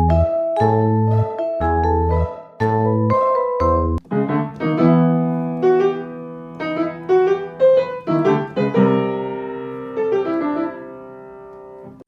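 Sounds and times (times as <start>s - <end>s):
piano music: 0.0s - 12.0s.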